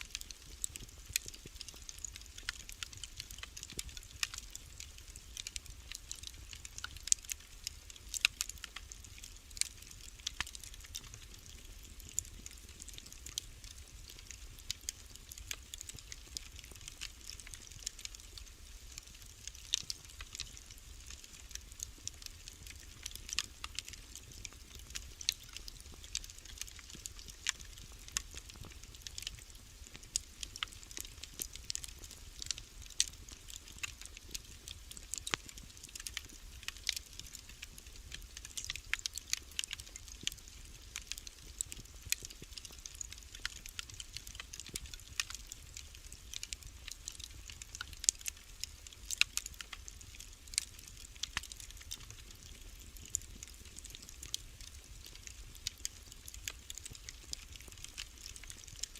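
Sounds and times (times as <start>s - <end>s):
wood fire crackling and popping: 0.0s - 58.9s.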